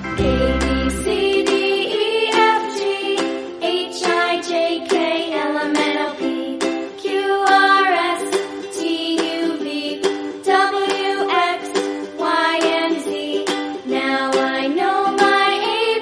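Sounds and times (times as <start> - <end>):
light plucked tune: 0.0 - 16.0.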